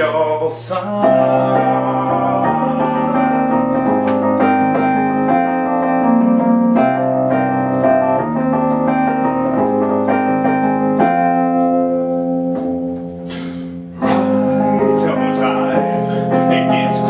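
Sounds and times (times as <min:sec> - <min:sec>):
electric piano chords: 0:00.9 - 0:17.0.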